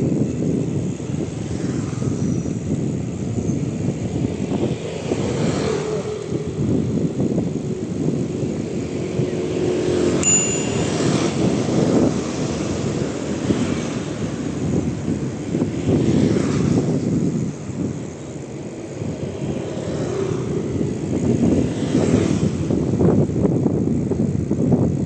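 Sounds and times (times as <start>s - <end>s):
wind buffeting microphone: 0.0s - 25.0s
thin high tone: 10.2s - 11.8s.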